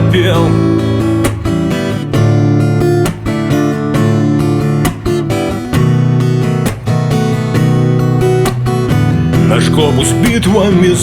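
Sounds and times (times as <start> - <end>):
acoustic guitar strumming chords: 0.0 - 11.0.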